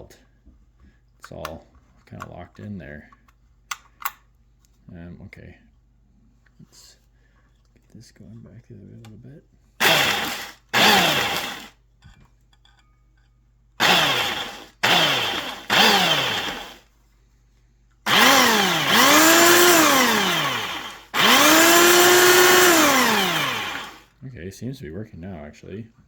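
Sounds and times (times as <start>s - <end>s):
belt sander motor whine: 9.8s - 11.7s, 13.8s - 16.8s, 18.1s - 24.1s.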